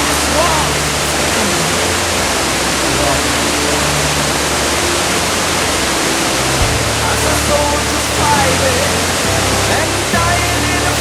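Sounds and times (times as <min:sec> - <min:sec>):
faint voices: 0:00.0 - 0:11.0
waterfall rushing: 0:00.0 - 0:11.0.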